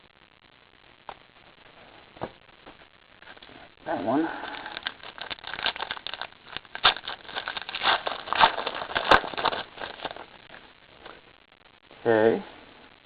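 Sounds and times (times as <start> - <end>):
card pack wrapper crinkling: 4.5 - 10.4.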